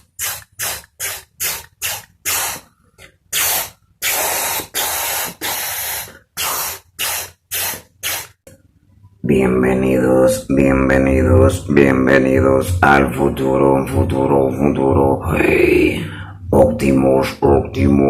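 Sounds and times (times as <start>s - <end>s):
mouth hissing bursts: 0.0s - 2.7s, 3.3s - 8.4s.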